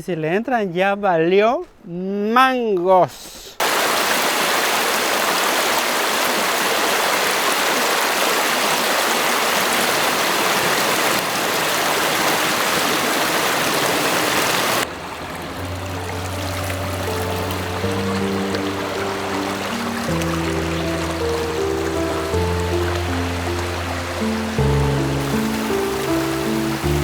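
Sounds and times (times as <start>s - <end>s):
rushing river water: 3.6s - 27.0s
soft background music: 14.8s - 27.0s.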